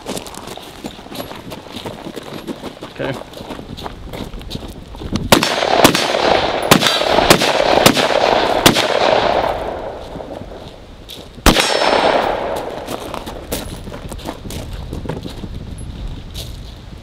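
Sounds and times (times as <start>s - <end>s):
rifle shots: 5.3s - 10.0s, 11.4s - 13.0s.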